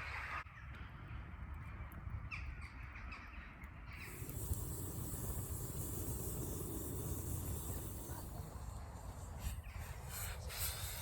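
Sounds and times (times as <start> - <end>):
steady hiss: 4.0 - 11.0.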